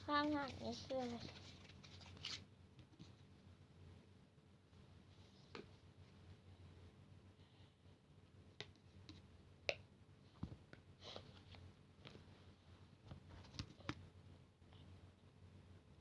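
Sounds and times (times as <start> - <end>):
faint clicks and taps: 8.5 - 9.8, 13.0 - 14.1.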